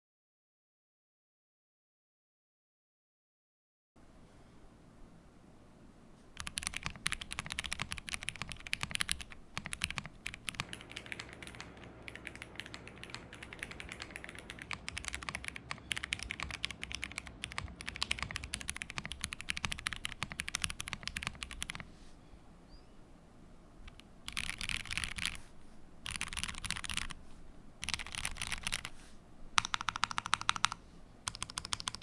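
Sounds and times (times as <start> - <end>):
fast typing on keyboard: 6.4 - 21.9, 23.8 - 27.2, 27.8 - 29.0, 29.6 - 32.0.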